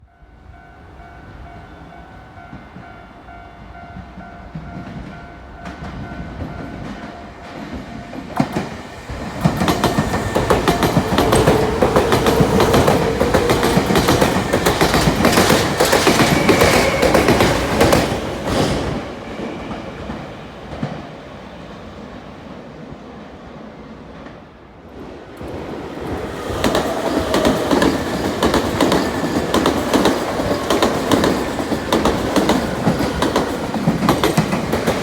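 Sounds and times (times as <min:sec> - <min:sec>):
electric train passing: 0:00.0 - 0:35.0
wheels clicking over rail joints: 0:08.2 - 0:18.8.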